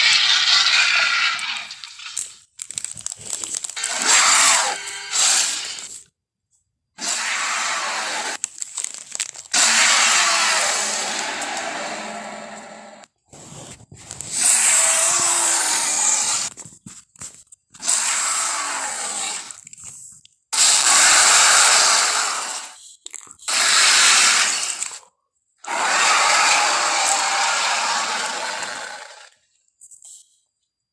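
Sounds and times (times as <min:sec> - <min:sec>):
dinosaur monster roars: 0:03.8 - 0:05.6, 0:07.0 - 0:08.4, 0:09.5 - 0:13.0, 0:14.4 - 0:16.5, 0:17.8 - 0:19.5, 0:25.6 - 0:29.3.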